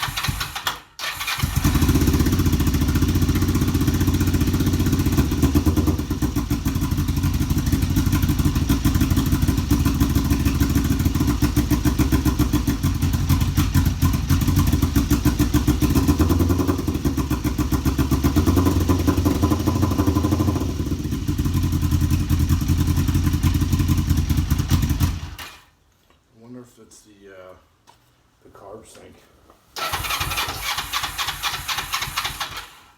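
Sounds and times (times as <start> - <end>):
motorcycle engine idling roughly: 1.5 - 25.4.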